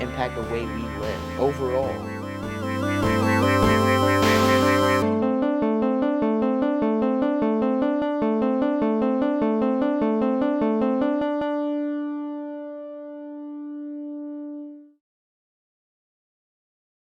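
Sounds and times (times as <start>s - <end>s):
held synthesizer note: 0.0s - 5.4s
synthesizer repeating notes: 0.0s - 5.4s.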